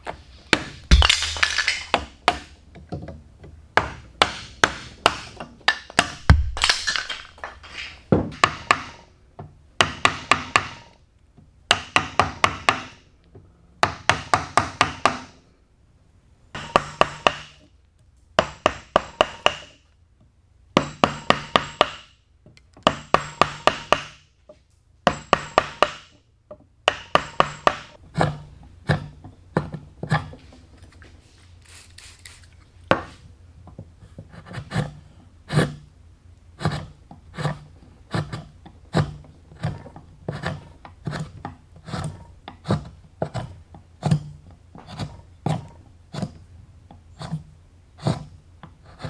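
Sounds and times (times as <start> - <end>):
mallet striking wood: 0.5 - 2.6, 3.8 - 7.5, 8.1 - 9.0, 9.8 - 10.8, 11.7 - 13.0, 13.8 - 15.3, 16.6 - 17.6, 18.4 - 19.8, 20.8 - 22.2, 22.8 - 24.3, 25.0 - 26.2, 26.8 - 30.3.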